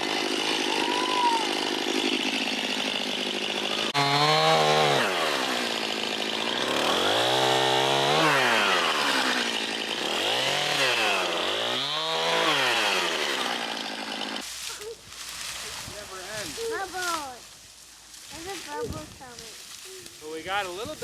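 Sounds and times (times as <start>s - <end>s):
chainsaw revving: 0.0s - 14.9s.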